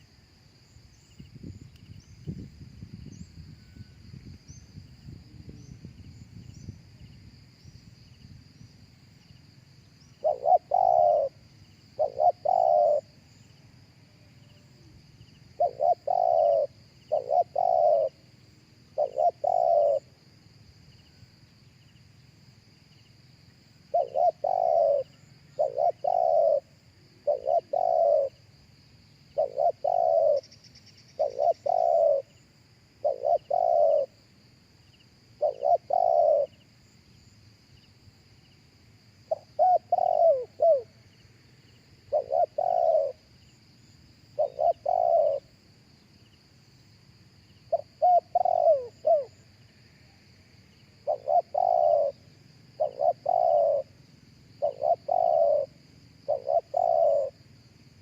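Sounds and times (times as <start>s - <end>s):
faint insect drone: 0.0s - 58.0s
dove cooing: 10.2s - 13.2s, 15.5s - 18.2s, 18.9s - 20.2s, 23.9s - 28.5s, 29.4s - 32.4s, 33.0s - 34.2s, 35.4s - 36.6s, 39.3s - 41.0s, 42.1s - 43.3s, 44.4s - 45.5s, 47.7s - 49.4s, 51.0s - 57.4s.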